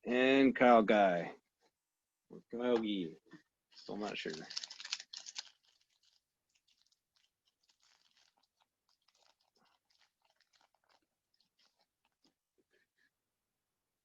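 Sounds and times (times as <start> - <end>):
trading cards rustling: 3.7 - 12.3.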